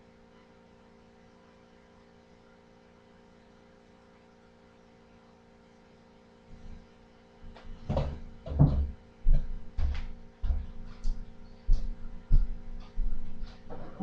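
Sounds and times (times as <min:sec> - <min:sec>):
low electrical hum: 0:00.0 - 0:14.0
irregular knocks and thumps: 0:07.5 - 0:14.0.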